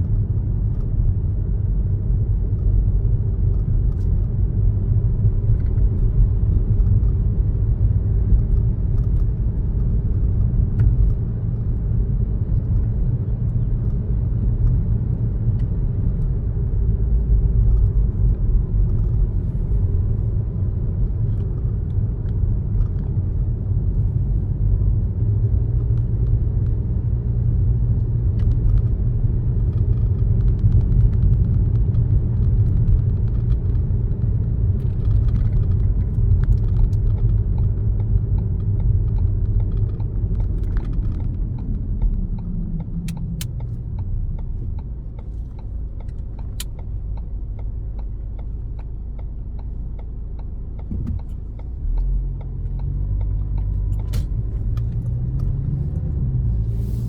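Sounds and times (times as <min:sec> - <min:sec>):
car engine and road noise: 0:00.0 - 0:57.0
faint light ticks: 0:05.5 - 0:16.4, 0:29.7 - 0:56.9.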